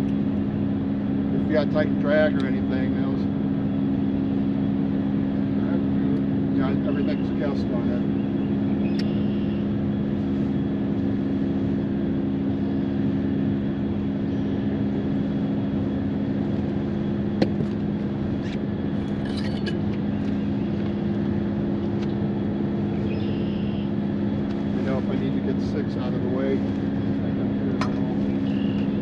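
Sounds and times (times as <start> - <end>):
steady engine drone: 0.0 - 29.0
sharp click: 8.9 - 9.2.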